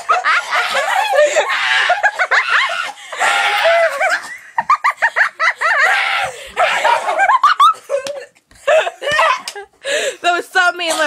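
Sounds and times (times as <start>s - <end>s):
children whooping like monkeys: 0.0s - 4.2s, 5.6s - 7.6s
children laughing: 0.0s - 9.8s.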